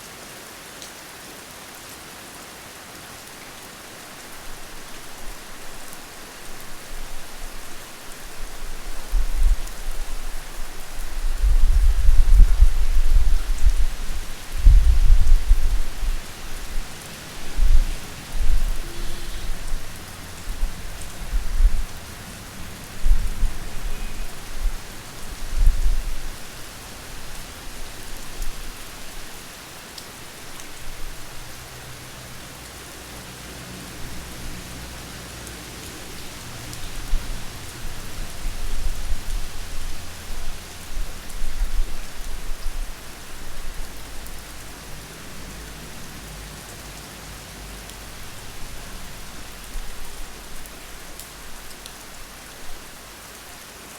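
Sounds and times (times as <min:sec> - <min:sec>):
steady rain falling: 0:00.0 - 0:53.9.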